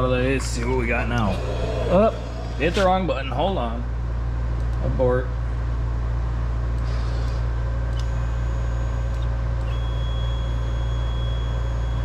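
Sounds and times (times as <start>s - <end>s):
stepper motors whining: 0.0s - 3.9s
low machine hum: 0.0s - 12.0s.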